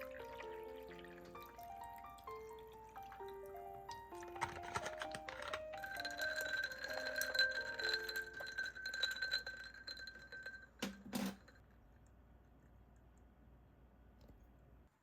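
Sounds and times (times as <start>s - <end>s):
gentle music with chime-like notes: 0.0s - 10.9s.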